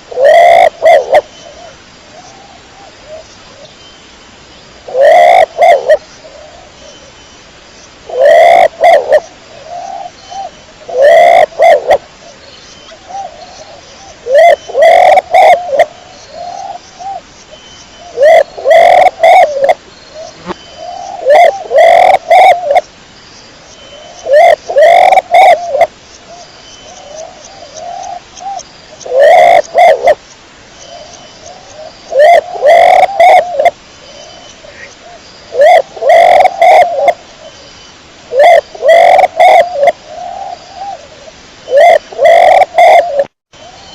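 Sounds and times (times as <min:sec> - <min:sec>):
pigeon cooing: 0:00.1 - 0:01.2, 0:04.9 - 0:06.0, 0:08.1 - 0:09.2, 0:10.9 - 0:12.0, 0:14.3 - 0:15.9, 0:18.2 - 0:19.8, 0:20.4 - 0:22.8, 0:24.2 - 0:25.9, 0:29.0 - 0:30.2, 0:32.1 - 0:33.8, 0:35.5 - 0:37.2, 0:38.3 - 0:41.0, 0:41.7 - 0:43.3.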